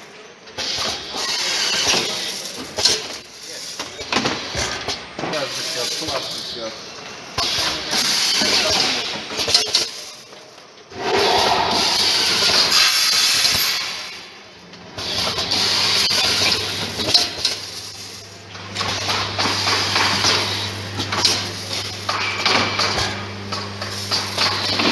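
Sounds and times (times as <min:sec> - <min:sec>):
low machine hum: 0:10.9 - 0:12.8
hissing air bursts: 0:10.9 - 0:14.2.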